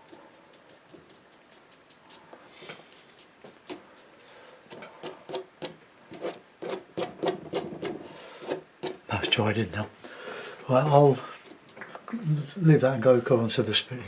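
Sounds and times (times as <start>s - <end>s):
paintbrush scrubbing on paper: 0.0s - 5.4s, 10.8s - 12.5s.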